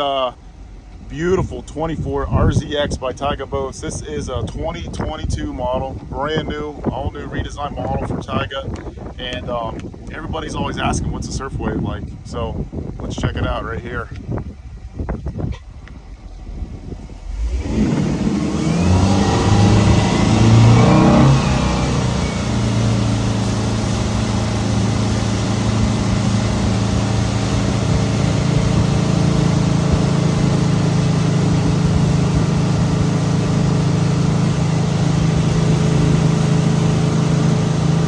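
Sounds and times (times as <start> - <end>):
boat engine revving: 0.0 - 38.0.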